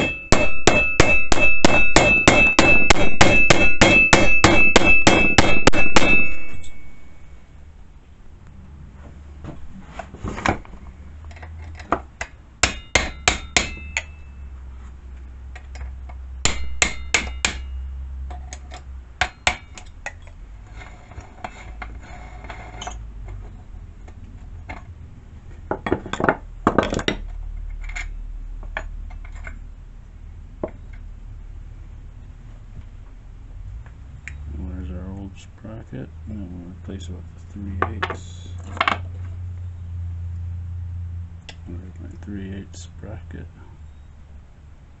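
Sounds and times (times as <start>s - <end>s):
hammer striking steel tool: 0.0s - 7.1s, 12.6s - 14.4s, 16.4s - 17.9s.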